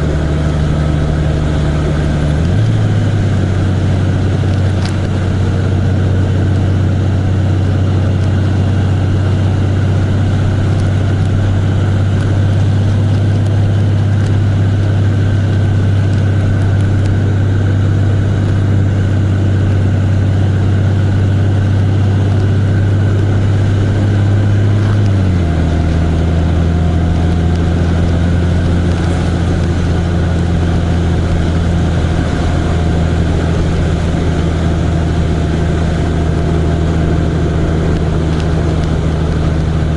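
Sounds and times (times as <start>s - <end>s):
vehicle engine running: 0.0s - 39.9s.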